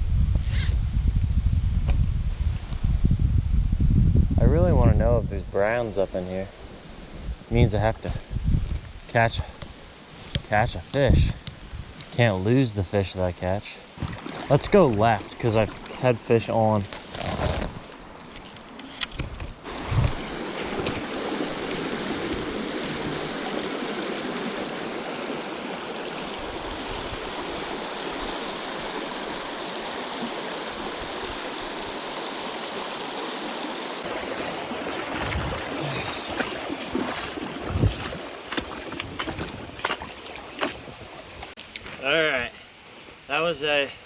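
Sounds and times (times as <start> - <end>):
creek rushing over stones: 11.6 - 18.7, 19.4 - 43.8.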